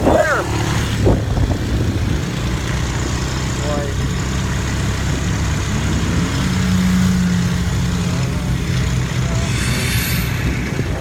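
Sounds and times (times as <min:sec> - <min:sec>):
atv engine running: 0:00.0 - 0:09.7
wind noise: 0:01.0 - 0:02.3, 0:09.4 - 0:11.0.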